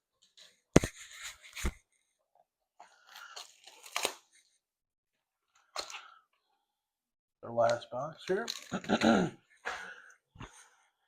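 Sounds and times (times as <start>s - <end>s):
card packaging crinkling and tearing: 2.8s - 4.5s, 8.2s - 9.0s.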